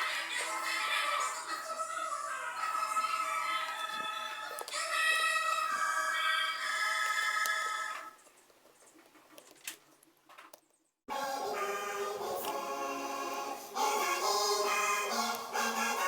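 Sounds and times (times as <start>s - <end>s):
music with choir singing: 11.1s - 16.0s.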